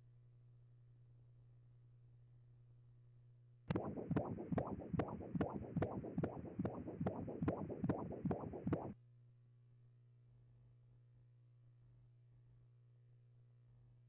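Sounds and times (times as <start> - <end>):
fetal heartbeat whooshing pulse: 3.7 - 9.0.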